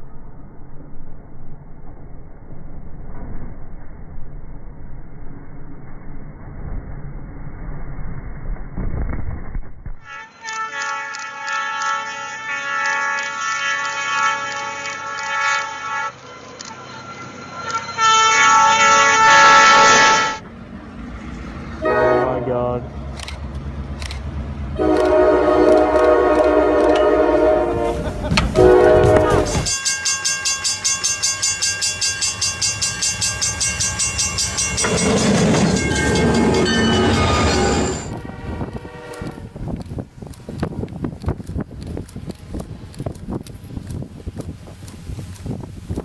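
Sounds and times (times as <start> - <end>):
dense train noise with steady tones: 0.0 - 8.4, 10.0 - 46.0
train horn blast: 10.1 - 16.6, 17.8 - 20.4, 21.8 - 22.8, 24.8 - 29.8, 34.8 - 39.6.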